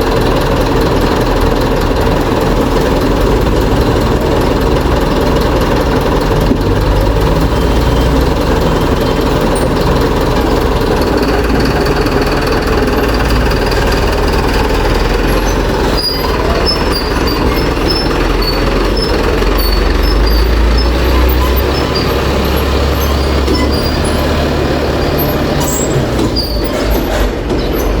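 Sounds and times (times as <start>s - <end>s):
truck engine idling: 0.0s - 28.0s.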